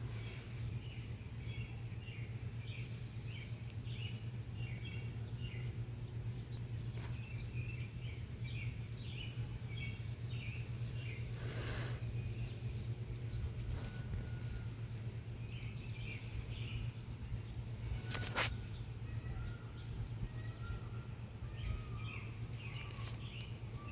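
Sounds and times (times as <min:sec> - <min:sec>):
small birds chirping: 0:00.0 - 0:23.9
steady low hum: 0:00.0 - 0:23.9.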